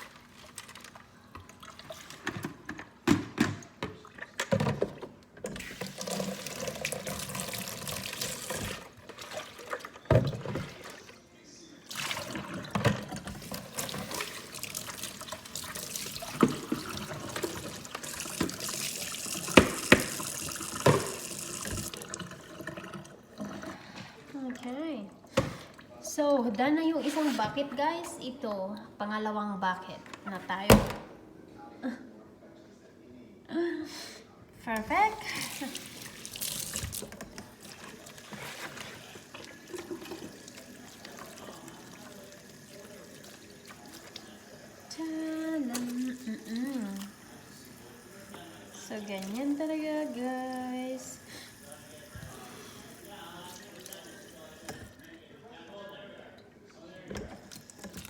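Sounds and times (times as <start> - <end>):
water running from a tap: 5.6 - 9.6, 11.9 - 23.6, 35.2 - 55.0
water splashing and trickling: 35.4 - 44.6.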